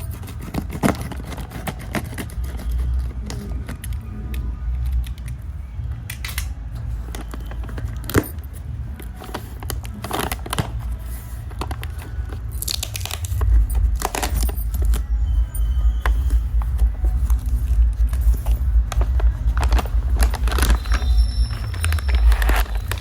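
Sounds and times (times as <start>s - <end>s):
steady low rumble: 0.0s - 23.0s
packaging tearing and crinkling: 9.0s - 15.1s.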